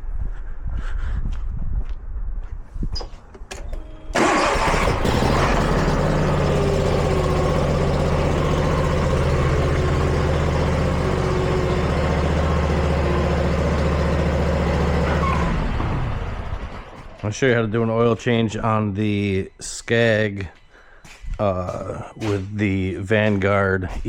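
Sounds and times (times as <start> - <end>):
mower engine idling: 4.1 - 17.4.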